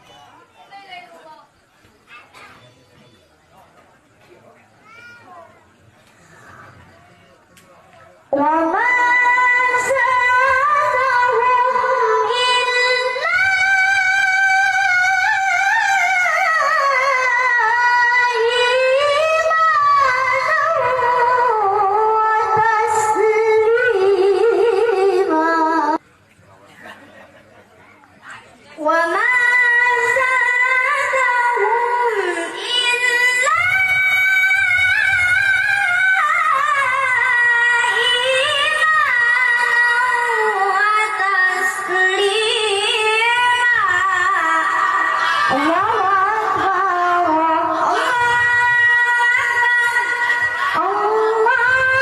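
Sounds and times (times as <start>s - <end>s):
child chanting recitation: 4.8s - 6.8s, 35.6s - 52.0s.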